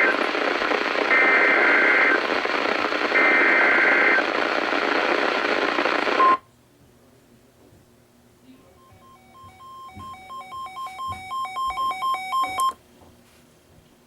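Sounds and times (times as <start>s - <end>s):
radio static hiss: 0.0s - 6.4s.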